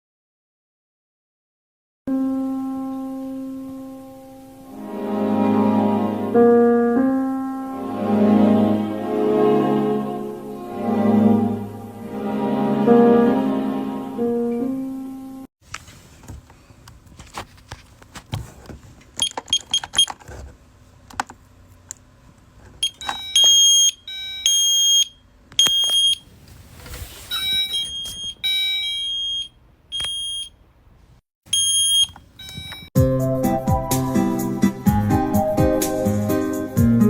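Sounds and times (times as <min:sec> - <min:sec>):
music: 0:02.1 - 0:15.5, 0:33.0 - 0:37.0
shrill alarm beeps: 0:22.8 - 0:26.2, 0:27.3 - 0:30.6, 0:31.5 - 0:32.9.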